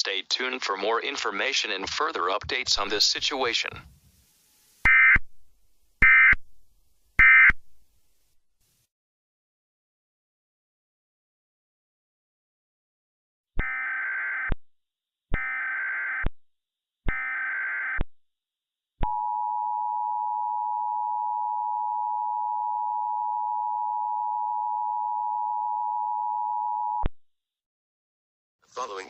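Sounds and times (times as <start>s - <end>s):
buzzy warbling data bursts: 2.7s - 5.2s.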